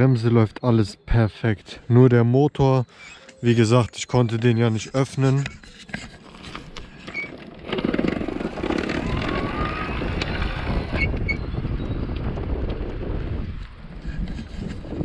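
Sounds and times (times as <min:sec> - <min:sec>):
person talking: 0:00.0 - 0:05.6
bicycle rolling and drivetrain noise: 0:05.5 - 0:15.0.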